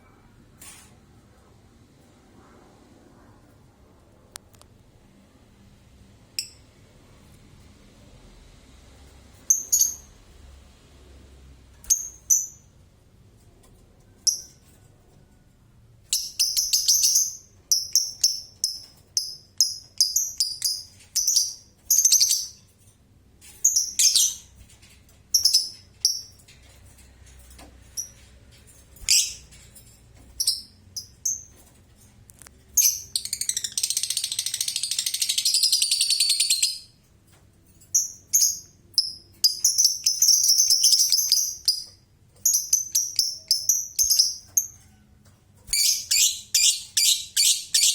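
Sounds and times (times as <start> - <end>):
bird chirping high-pitched: 9.5 - 10.1, 11.9 - 12.7, 16.1 - 22.7, 23.6 - 24.5, 25.3 - 26.4, 29.0 - 29.5, 32.8 - 37.0, 38.0 - 44.8, 45.7 - 47.9.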